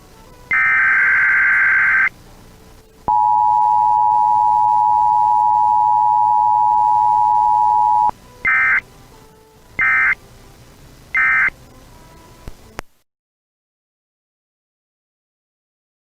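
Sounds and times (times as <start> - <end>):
screeching data bursts: 0.5 - 2.1, 3.1 - 8.8, 9.8 - 10.2, 11.2 - 11.5
two-tone alert signal: 3.1 - 8.8
click: 12.4 - 12.9.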